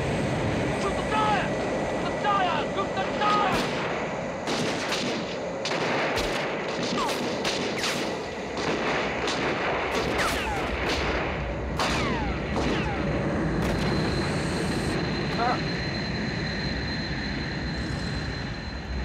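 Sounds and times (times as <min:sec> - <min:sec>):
steady noisy roar: 0:00.0 - 0:19.0
gunfire shots and volleys: 0:03.5 - 0:13.9.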